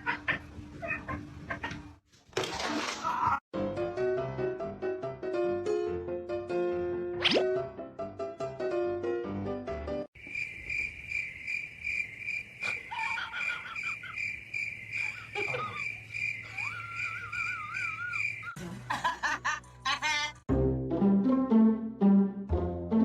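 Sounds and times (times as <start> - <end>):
pulsing insect trill: 10.2 - 18.6.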